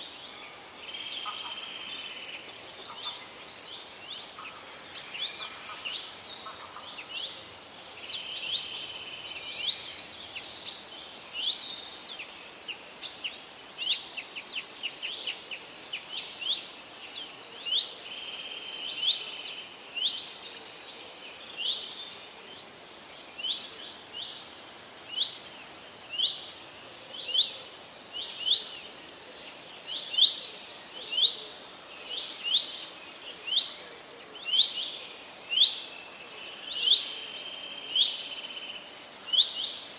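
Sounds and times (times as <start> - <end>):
faint steady hiss: 0.0 - 39.9
birds chirping and trilling: 0.5 - 20.3.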